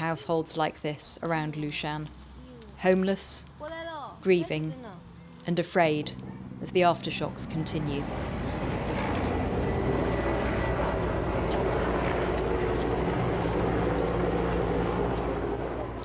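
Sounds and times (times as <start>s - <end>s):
engine drone: 5.0s - 16.0s.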